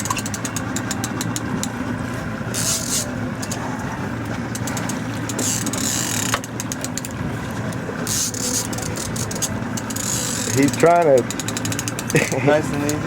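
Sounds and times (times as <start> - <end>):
fishing reel clicking: 0.0 - 1.8, 2.5 - 3.6, 4.6 - 7.2, 8.0 - 13.0
boat motor idling: 0.0 - 13.0.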